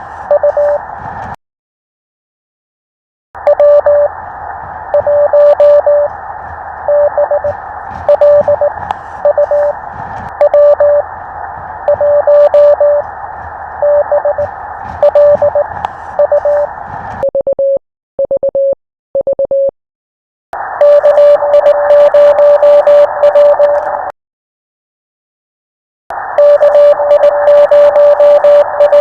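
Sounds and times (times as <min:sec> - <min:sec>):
morse code tone: 0:00.0 - 0:00.8, 0:03.4 - 0:04.3, 0:04.9 - 0:11.2, 0:11.8 - 0:13.1, 0:13.7 - 0:19.7, 0:20.8 - 0:24.1, 0:26.1 - 0:29.0
radio band hiss: 0:00.0 - 0:01.4, 0:03.4 - 0:17.2.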